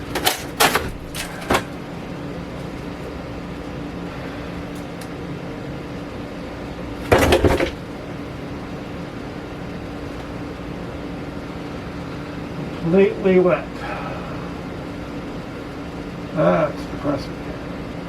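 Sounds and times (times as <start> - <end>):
low mechanical hum: 0.0 - 18.0
loud rattling clatter: 7.0 - 7.9.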